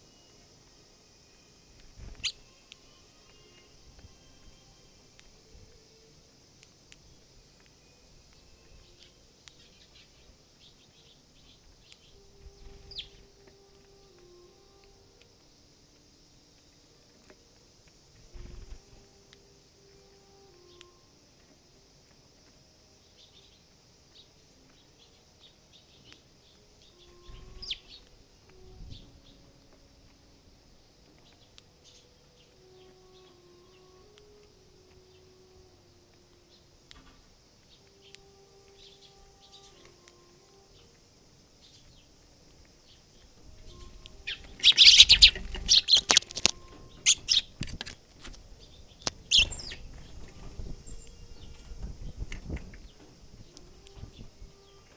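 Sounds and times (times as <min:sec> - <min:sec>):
bird chirp: 0:01.2 - 0:06.1, 0:06.8 - 0:15.0, 0:18.1 - 0:21.0, 0:23.0 - 0:35.6, 0:37.6 - 0:54.9
bird pecking and seed cracking: 0:01.8 - 0:04.1, 0:11.8 - 0:16.0, 0:36.0 - 0:41.0, 0:41.6 - 0:51.3
sharp clicks: 0:43.6 - 0:48.4.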